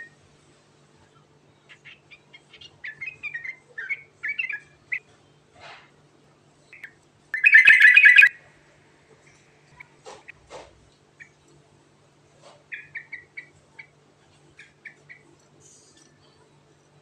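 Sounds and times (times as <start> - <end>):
bird singing chirped phrases: 6.8 - 8.4
bird rapid chattering burst: 7.4 - 8.3.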